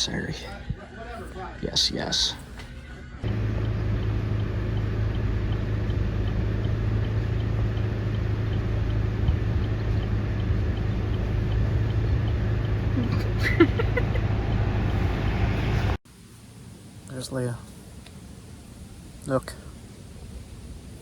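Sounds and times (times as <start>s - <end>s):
vehicle engine drone: 1.7s - 16.0s
faint regular ticking: 3.2s - 12.9s.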